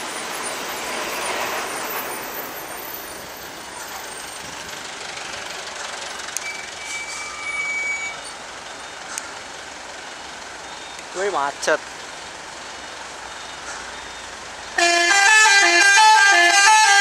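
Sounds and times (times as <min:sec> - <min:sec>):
large vehicle engine running: 0:00.0 - 0:14.8
road traffic noise: 0:00.0 - 0:17.0
faint steady high tone: 0:06.4 - 0:08.4.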